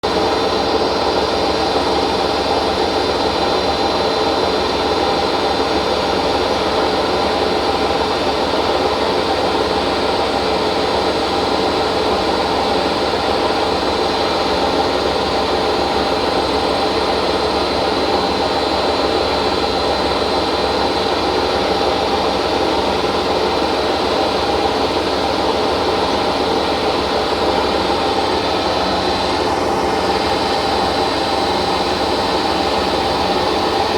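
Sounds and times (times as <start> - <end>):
washing machine spinning: 0.0 - 33.9.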